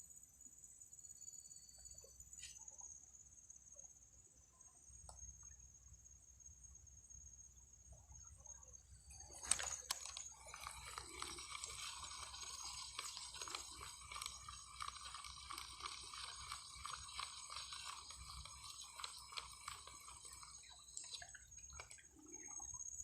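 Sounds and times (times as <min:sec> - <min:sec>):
insects chirping: 0:00.0 - 0:23.0
small clicks and crackles: 0:09.0 - 0:23.0.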